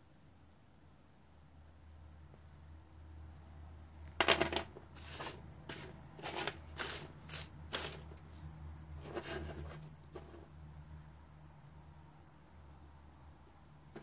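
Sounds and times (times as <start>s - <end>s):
dry rustling scrapes of okra pods: 4.9s - 8.3s.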